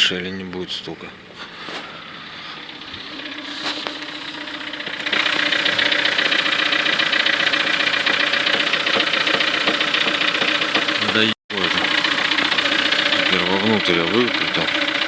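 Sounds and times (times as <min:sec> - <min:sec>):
car engine running: 0:01.1 - 0:15.0
fast knocking rattle: 0:04.3 - 0:15.0.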